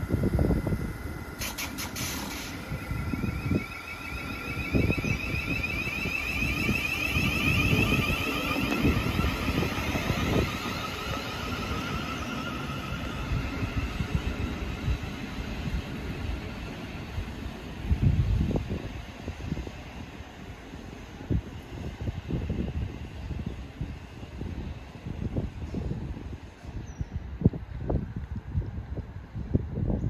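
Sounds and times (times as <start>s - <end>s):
high warbling whine: 0.0s - 18.8s
train low rumble: 0.0s - 30.0s
wind buffeting microphone: 0.0s - 30.0s.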